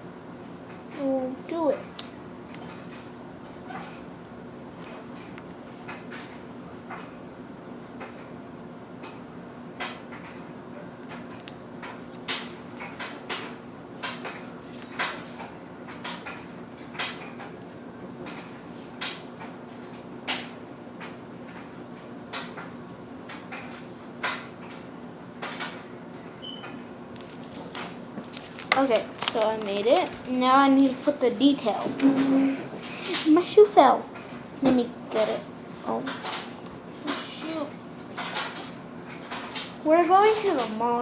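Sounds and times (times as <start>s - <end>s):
steady low hum: 0.0s - 41.0s
paper and craft tools clicking: 27.7s - 30.9s.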